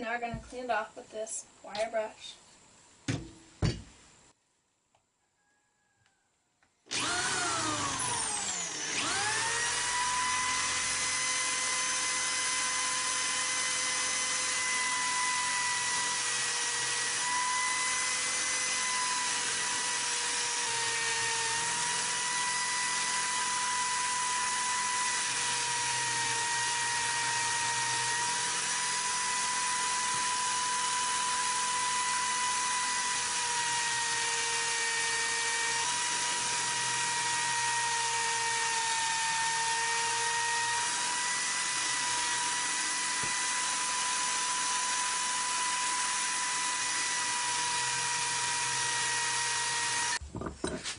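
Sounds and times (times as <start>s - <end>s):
wire brush power tool whine: 6.9s - 50.2s.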